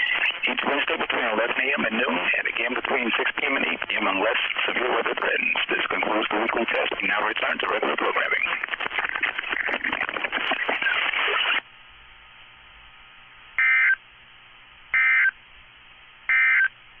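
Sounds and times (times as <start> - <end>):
digital data tone bursts: 0.0 - 0.4
radio voice announcement: 0.0 - 11.6.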